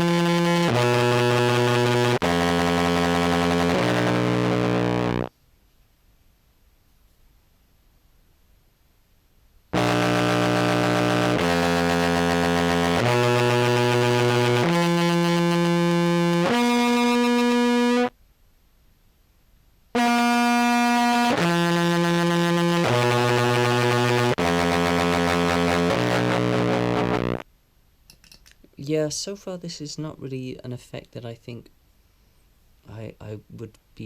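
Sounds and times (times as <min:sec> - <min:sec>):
distorted contrabass clarinet notes: 0:00.0 - 0:05.3, 0:09.8 - 0:18.1, 0:20.0 - 0:27.4.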